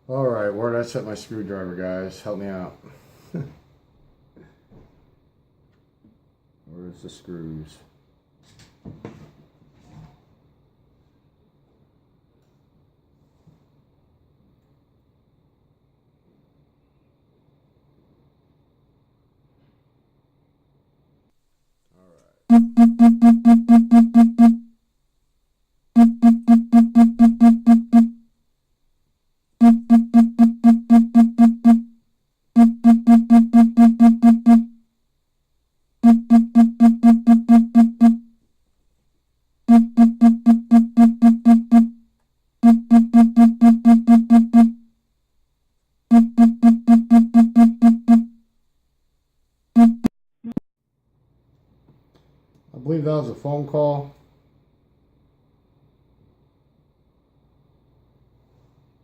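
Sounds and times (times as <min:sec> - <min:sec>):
phone electronic ringtone: 0:22.5 - 0:24.6, 0:26.0 - 0:28.1, 0:29.6 - 0:31.8, 0:32.6 - 0:34.7, 0:36.0 - 0:38.2, 0:39.7 - 0:41.9, 0:42.6 - 0:44.8, 0:46.1 - 0:48.3.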